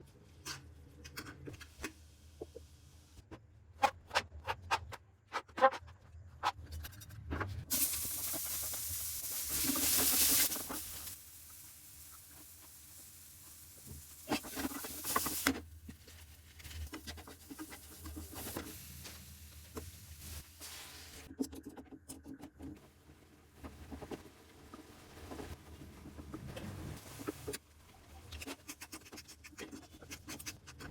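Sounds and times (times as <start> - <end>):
food sizzling in a pan: 7.7 - 21.3.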